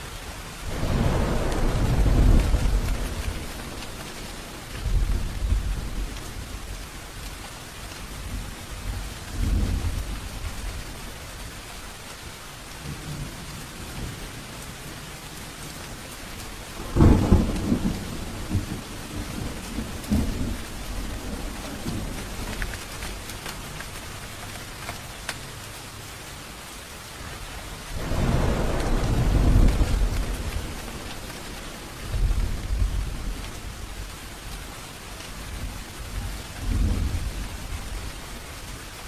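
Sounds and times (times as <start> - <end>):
steady rain: 0.0 - 39.0
thunder rumbling: 0.4 - 11.8, 12.8 - 25.0, 27.3 - 39.0
sudden peal of thunder: 28.0 - 33.5.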